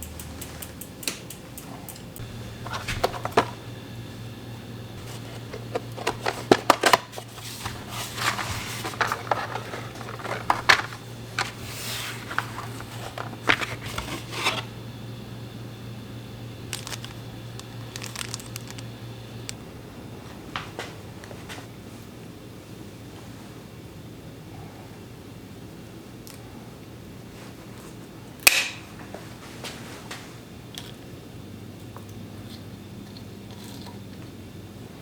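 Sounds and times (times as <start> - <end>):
low steady hum: 0.0 - 24.5
bicycle parts and tools handled: 0.1 - 3.7, 5.0 - 14.7, 16.7 - 19.6.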